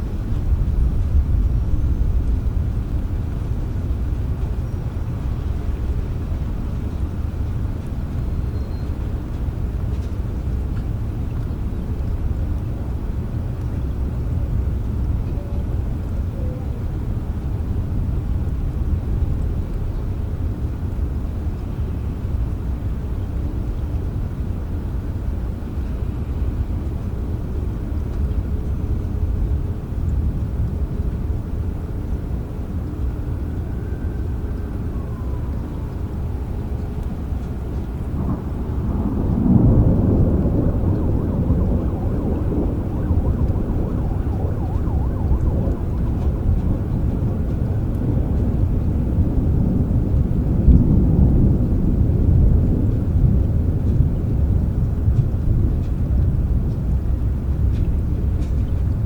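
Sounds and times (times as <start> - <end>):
low rumbling thunder: 0.0 - 19.7, 33.5 - 59.0
rain: 0.0 - 59.0.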